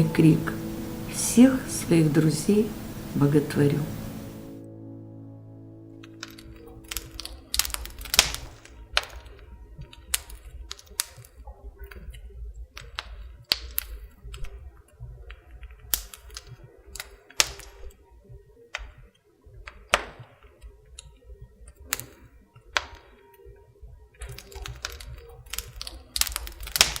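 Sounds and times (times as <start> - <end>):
low rumble: 0.0 - 10.7.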